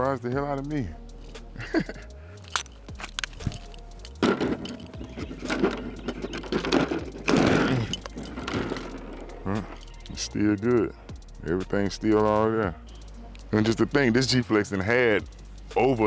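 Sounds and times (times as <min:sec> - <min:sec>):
pistol parts clicking and clattering: 0:02.4 - 0:10.0
metal rattling and rubbing: 0:02.4 - 0:10.2.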